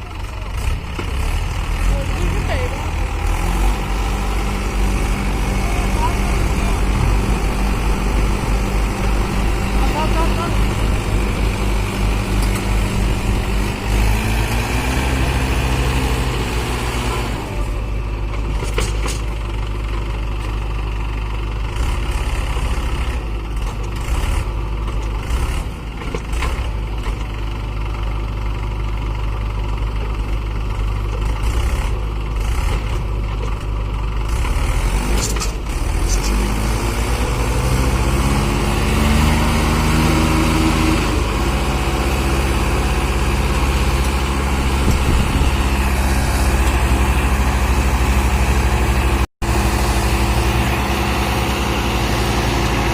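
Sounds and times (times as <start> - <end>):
tractor engine revving under load: 0.0 - 52.9.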